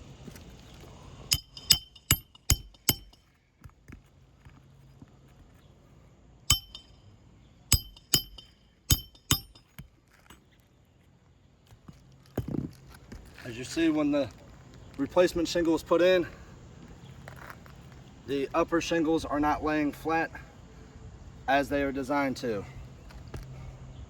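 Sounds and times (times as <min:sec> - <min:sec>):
hammer striking nails: 0:01.3 - 0:03.2, 0:06.5 - 0:06.9, 0:07.7 - 0:09.9.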